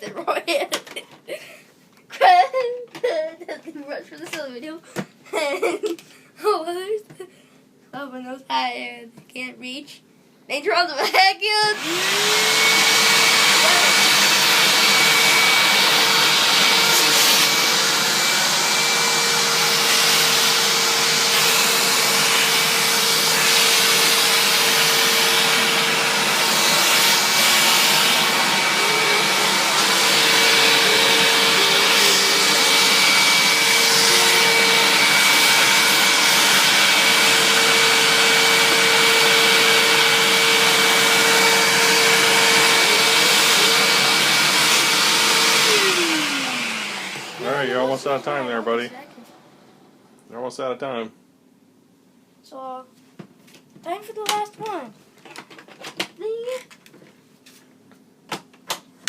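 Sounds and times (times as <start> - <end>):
vacuum cleaner running: 11.0 - 51.0.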